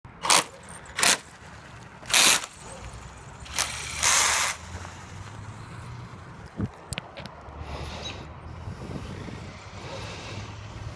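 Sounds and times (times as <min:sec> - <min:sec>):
toy truck drivetrain grinding: 0:00.2 - 0:05.9.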